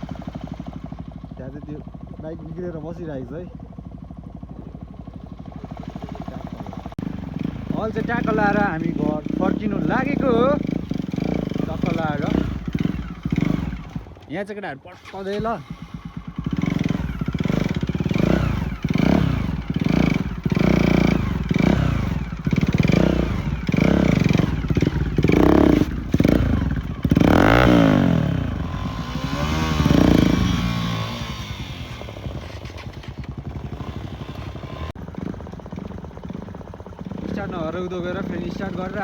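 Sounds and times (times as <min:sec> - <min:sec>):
motorcycle engine revving: 0:00.0 - 0:39.0
exhaust popping: 0:15.0 - 0:39.0.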